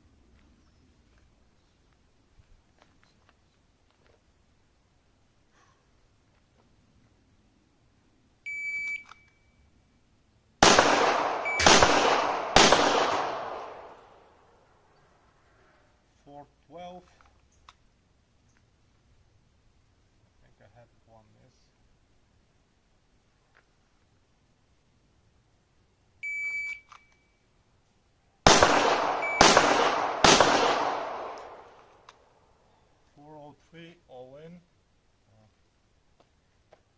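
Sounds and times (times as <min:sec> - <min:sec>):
reverberant pistol shots: 0:10.6 - 0:14.2, 0:28.5 - 0:32.0
shot timer beep: 0:11.4 - 0:11.7, 0:26.2 - 0:27.3, 0:29.2 - 0:29.5.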